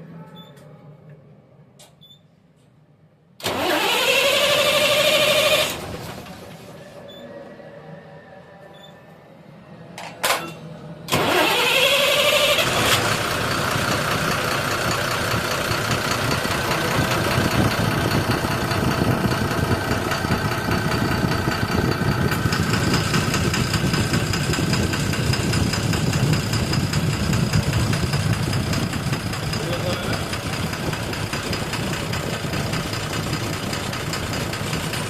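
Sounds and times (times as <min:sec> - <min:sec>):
car engine starting and idling: 0:03.4 - 0:07.0, 0:11.1 - 0:35.0.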